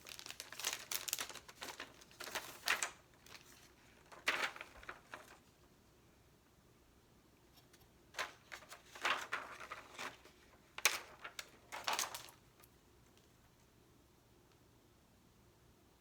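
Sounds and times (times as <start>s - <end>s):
stickers crinkling and peeling: 0.0s - 5.3s, 8.2s - 12.4s.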